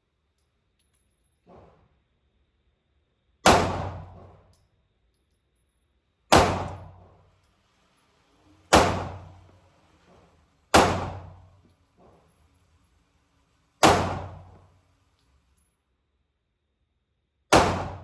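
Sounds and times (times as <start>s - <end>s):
pistol shots echoing indoors: 3.3s - 4.6s, 6.1s - 7.5s, 8.5s - 10.0s, 10.6s - 11.9s, 13.8s - 15.4s, 17.5s - 18.0s.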